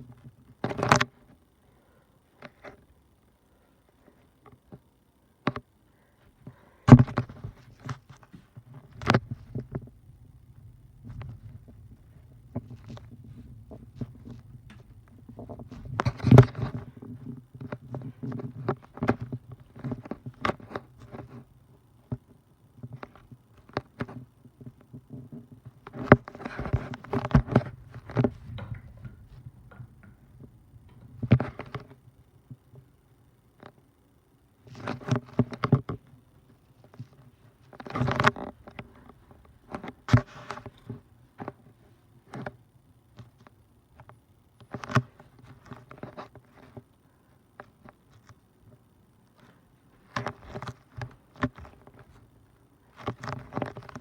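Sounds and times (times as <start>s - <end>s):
ceiling fan motor humming: 0.0s - 54.0s
irregular clicks and knocks: 22.0s - 33.9s.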